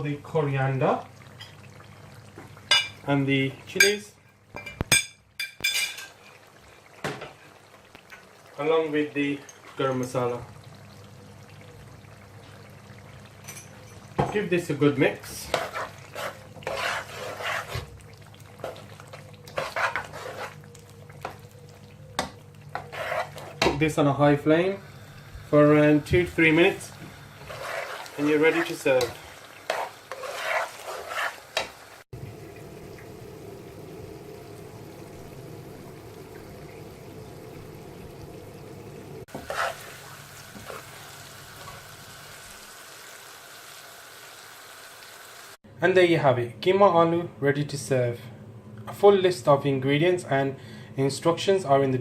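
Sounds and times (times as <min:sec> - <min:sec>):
curry sizzling in a pan: 0:00.0 - 0:45.6
spoon scraping a pan: 0:15.2 - 0:18.0, 0:18.6 - 0:21.4, 0:22.7 - 0:23.7, 0:27.4 - 0:31.8, 0:39.3 - 0:40.9
faint steady hum: 0:32.2 - 0:39.3, 0:45.7 - 0:52.0.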